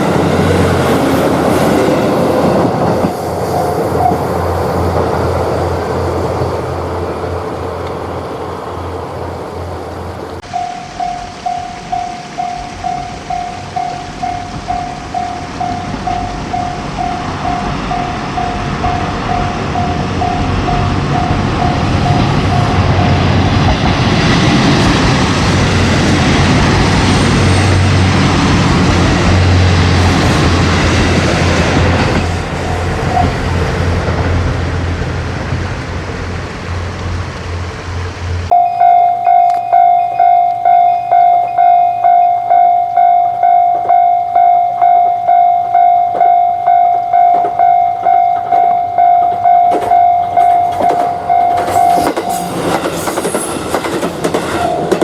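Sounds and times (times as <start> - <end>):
train passing: 0.0 - 55.0
level-crossing warning bell ringing: 10.4 - 25.1, 25.7 - 33.7, 38.5 - 52.8.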